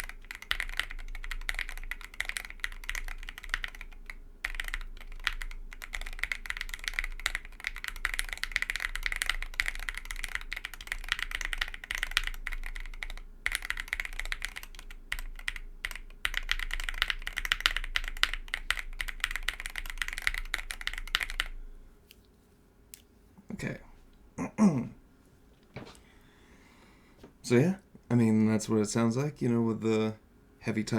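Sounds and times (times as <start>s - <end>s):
fast typing on mechanical keyboard: 0.0s - 21.6s.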